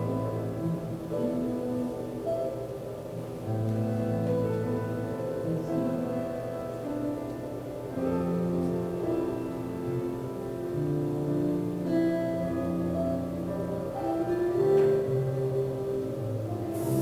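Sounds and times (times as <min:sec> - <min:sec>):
slow keyboard chords: 0:00.0 - 0:17.0.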